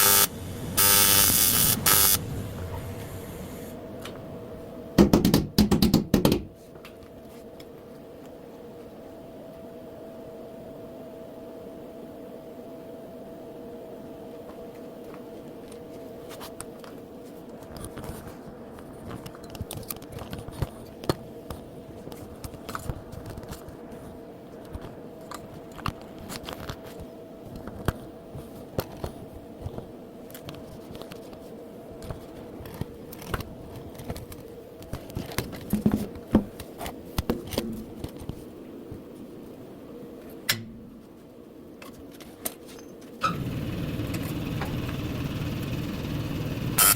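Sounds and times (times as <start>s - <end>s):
steady machine hum: 0.0s - 5.1s, 43.3s - 46.9s.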